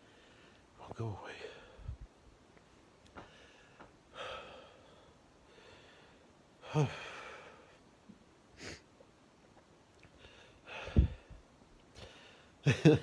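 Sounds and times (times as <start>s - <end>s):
man breathing heavily: 0.0s - 2.0s, 3.2s - 7.8s, 10.1s - 12.6s
voiced out-breath: 10.2s - 11.4s.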